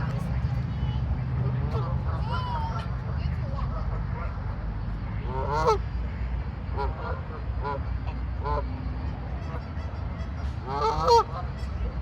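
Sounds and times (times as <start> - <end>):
geese honking: 5.2 - 5.8, 6.8 - 12.0.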